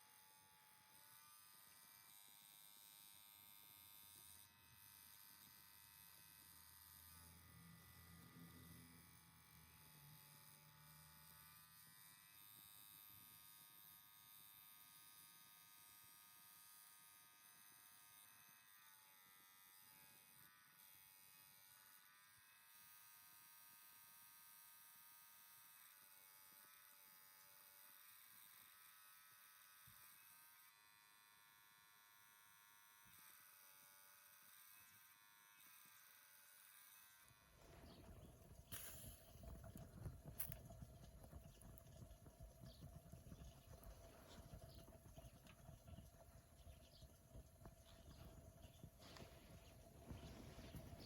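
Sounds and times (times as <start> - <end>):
blower fan buzzing: 37.3 - 51.0.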